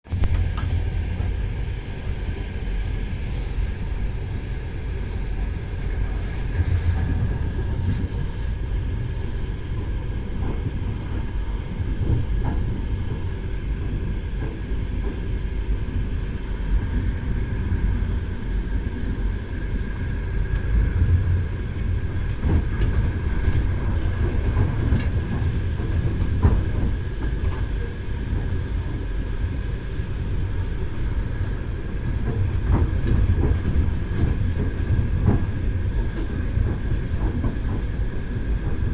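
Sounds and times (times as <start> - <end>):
train wheels knocking on rails: 9.7 - 29.6, 30.2 - 38.9.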